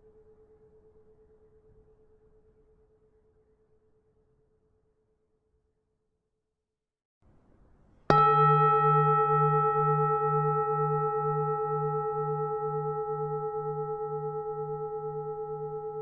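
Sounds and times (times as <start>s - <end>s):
temple bell ringing: 8.1s - 16.0s.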